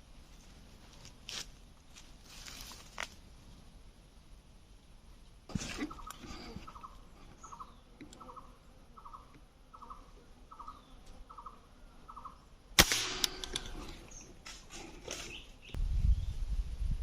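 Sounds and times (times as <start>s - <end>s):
rustle: 0.0s - 11.7s, 12.8s - 17.0s
loud gunshot crack: 12.8s - 13.6s.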